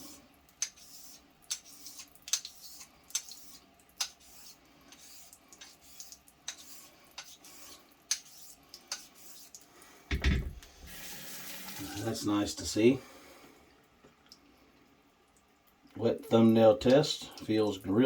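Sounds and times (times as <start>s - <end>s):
razor scraping on whetstone: 0.6s - 9.6s.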